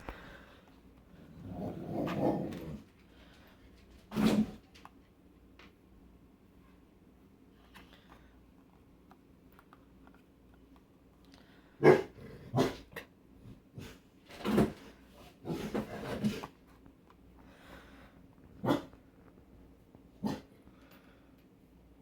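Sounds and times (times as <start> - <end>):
dog barking: 11.8 - 12.8, 18.6 - 19.0, 20.2 - 20.5.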